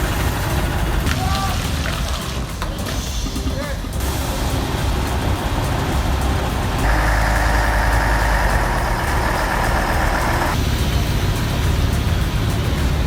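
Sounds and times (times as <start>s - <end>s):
higher steady tone: 3.4s - 12.9s
heavy machine engine rumbling: 3.9s - 13.0s.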